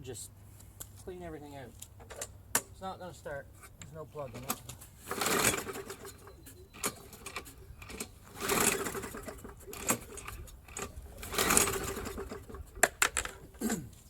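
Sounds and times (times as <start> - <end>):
mower engine pull-start whir: 3.8 - 13.8.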